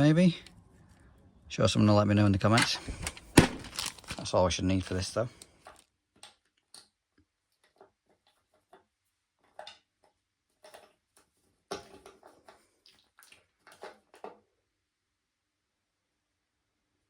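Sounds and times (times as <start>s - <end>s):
plastic parts clicking and tapping: 2.5s - 11.0s.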